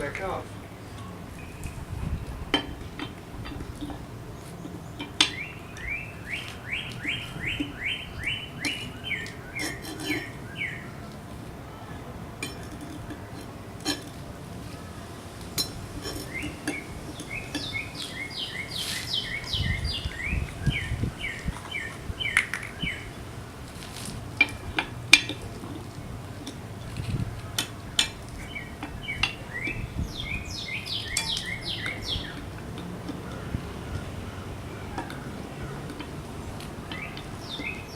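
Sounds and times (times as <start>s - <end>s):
songbird singing: 0.0s - 23.6s, 24.3s - 37.9s
metal clicks and clinks: 8.6s - 10.4s, 12.4s - 14.3s, 15.4s - 17.8s.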